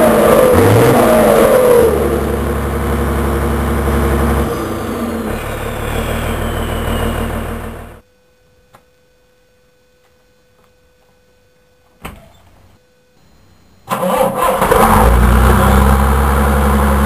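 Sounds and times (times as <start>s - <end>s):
turbocharger whistle: 0.0s - 2.5s, 4.4s - 8.0s
diesel truck engine revving: 0.0s - 8.0s, 13.9s - 17.0s.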